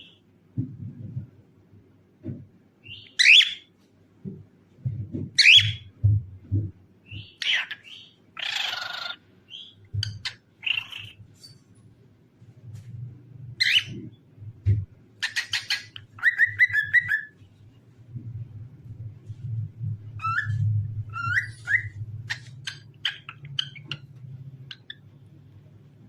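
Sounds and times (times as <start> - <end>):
low steady hum: 0.0 - 26.0
cockatiel whistling and chirping: 2.9 - 3.6, 5.4 - 5.8, 13.6 - 14.0, 15.2 - 17.3, 20.2 - 24.0.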